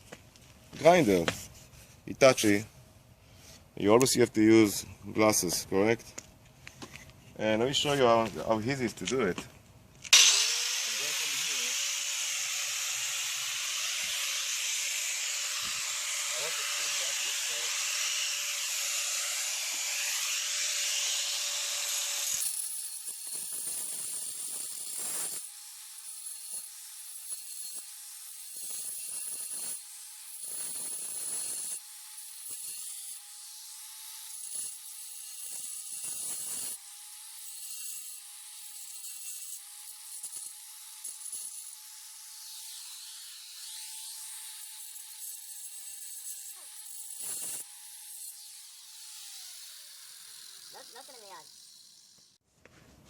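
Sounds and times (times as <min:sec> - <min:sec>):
angle grinder cutting concrete: 0:10.1 - 0:52.4.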